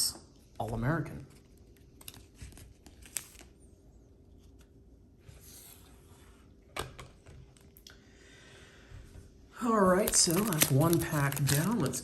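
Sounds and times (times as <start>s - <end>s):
soft sliding rustle of cards: 4.4s - 6.5s.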